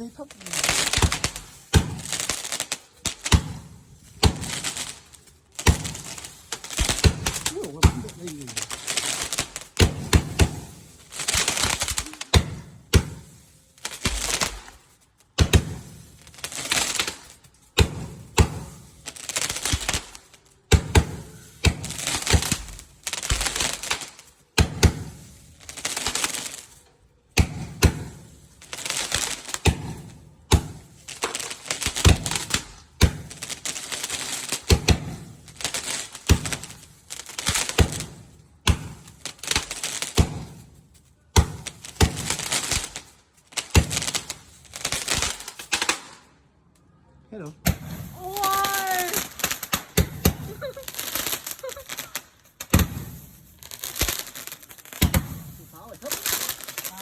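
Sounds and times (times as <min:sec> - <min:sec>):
fireworks bangs: 0:00.0 - 0:40.7, 0:41.3 - 0:46.3, 0:47.6 - 0:57.0
fireworks crackling fizz: 0:00.0 - 0:46.3, 0:47.5 - 0:57.0.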